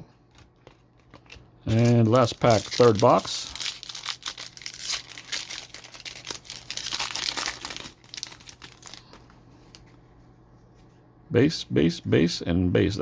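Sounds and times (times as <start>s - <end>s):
card pack wrapper crinkling and tearing: 0.3s - 9.8s.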